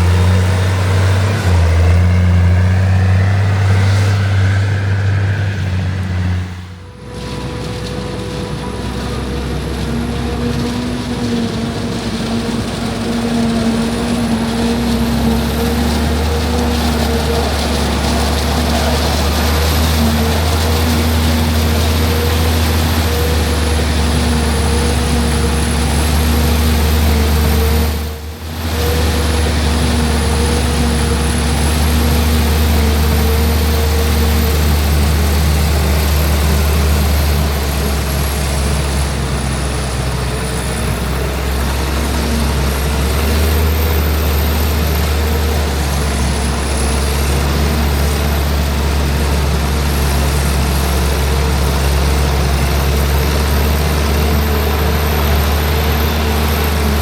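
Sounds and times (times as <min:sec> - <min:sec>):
heavy diesel machinery running: 0:00.0 - 0:57.0.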